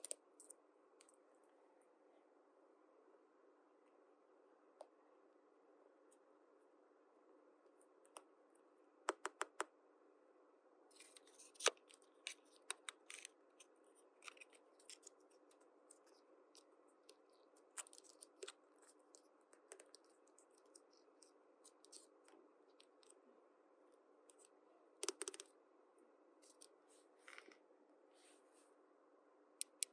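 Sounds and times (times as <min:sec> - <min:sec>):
plastic toy pieces clicking: 0:25.0 - 0:25.5.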